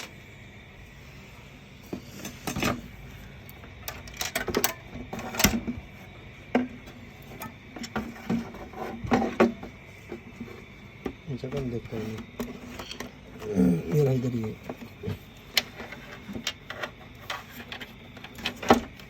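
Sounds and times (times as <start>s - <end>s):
clicks and knocks of small parts: 3.4s - 5.8s, 14.6s - 19.0s.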